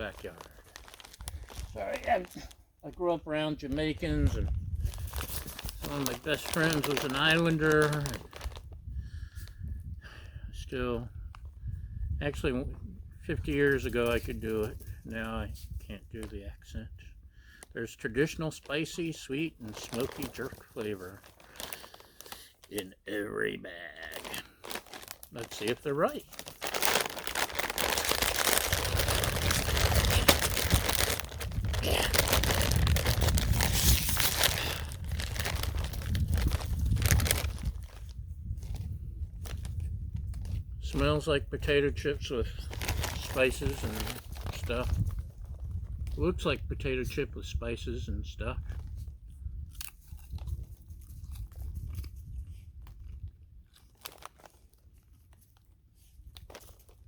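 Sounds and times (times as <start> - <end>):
chip bag crinkling: 0.0 - 2.6, 3.8 - 8.7, 18.5 - 40.5, 42.5 - 45.8, 52.8 - 57.0.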